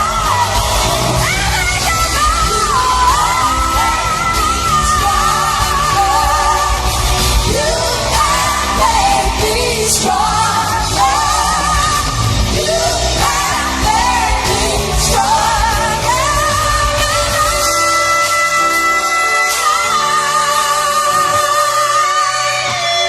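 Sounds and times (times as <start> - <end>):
backing band playing: 0.0 - 23.0
woman singing with vibrato: 0.0 - 23.0.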